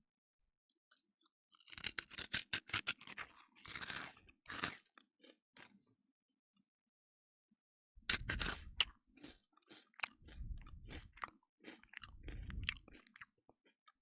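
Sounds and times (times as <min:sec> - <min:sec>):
crunchy snack crunching: 0:01.5 - 0:05.8, 0:08.1 - 0:14.0.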